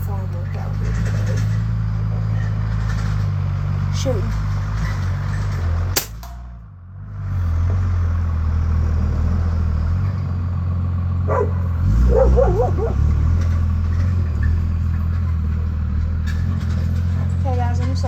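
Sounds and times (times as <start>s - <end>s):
diesel truck engine idling: 0.0s - 18.0s
air rifle shot: 6.0s - 6.4s.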